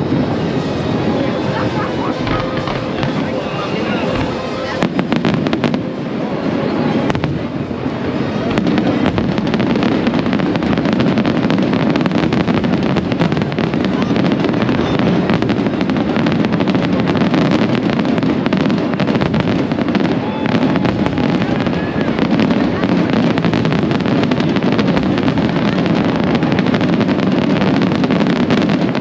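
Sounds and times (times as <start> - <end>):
fireworks cracking and popping: 0.0 - 6.2, 6.8 - 29.0
rumble of fireworks bursts: 0.0 - 29.0.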